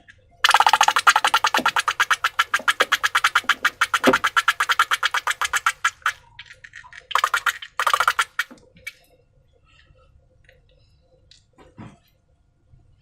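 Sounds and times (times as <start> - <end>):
crackly bursts: 0.4 - 8.5.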